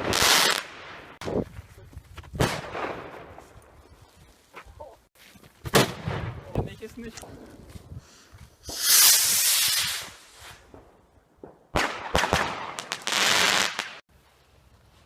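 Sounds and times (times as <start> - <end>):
firework hissing: 8.6 - 10.6
firework cracks: 8.6 - 10.8, 11.4 - 14.0.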